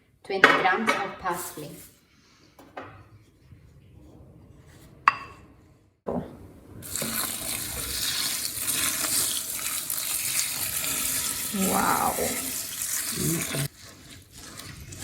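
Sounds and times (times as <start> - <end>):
liquid being poured: 6.8 - 15.0.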